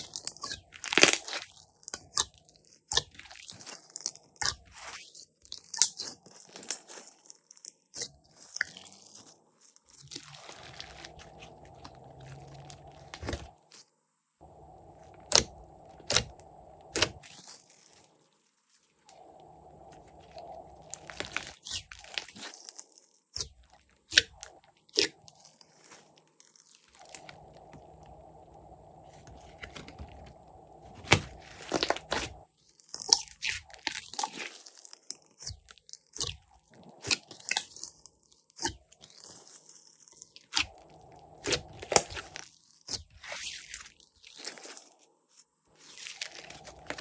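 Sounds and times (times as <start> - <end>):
hands squishing slime: 0.0 - 13.8, 14.4 - 18.2, 19.1 - 44.8.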